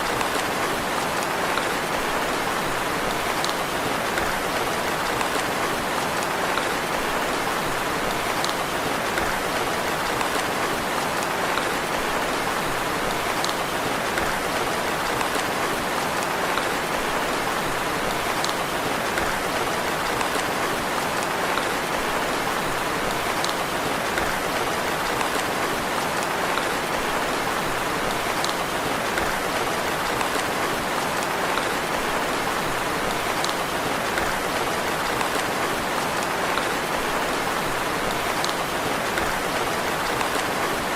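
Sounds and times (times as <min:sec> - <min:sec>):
steady rain falling: 0:00.0 - 0:40.9
raindrop ticks: 0:08.1 - 0:17.5, 0:18.1 - 0:40.9.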